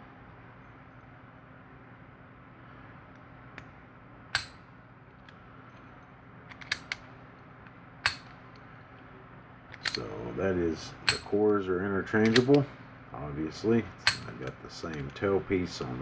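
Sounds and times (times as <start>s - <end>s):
faint steady hum: 0.0s - 16.0s
padlock clicking: 4.3s - 4.6s, 6.5s - 7.1s, 8.0s - 8.7s, 9.7s - 10.1s, 11.0s - 11.6s, 12.2s - 12.7s, 14.0s - 15.2s.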